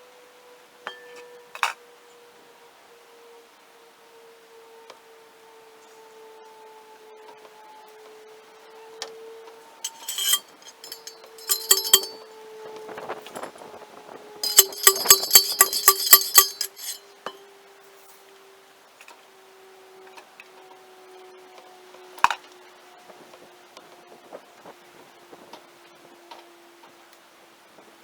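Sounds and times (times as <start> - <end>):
sharp metallic clinks: 9.9 - 12.2, 14.4 - 17.0.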